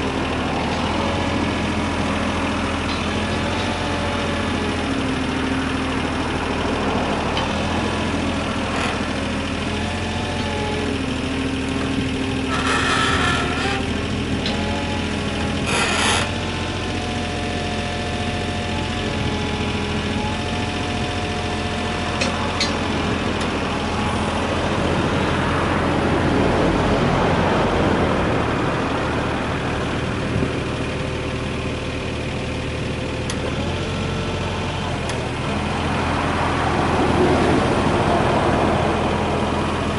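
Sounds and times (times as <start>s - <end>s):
hydraulic whine: 0.0s - 27.6s
excavator diesel engine running: 0.0s - 39.9s.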